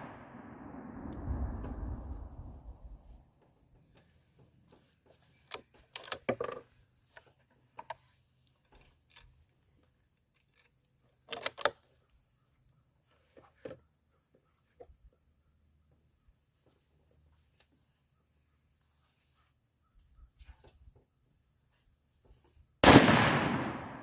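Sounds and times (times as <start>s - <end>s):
rifle bolt metallic clicks: 11.3s - 11.8s.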